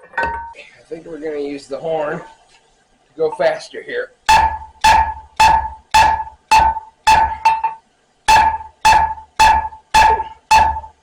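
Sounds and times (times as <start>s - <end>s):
hammer striking steel on anvil: 4.3s - 11.0s.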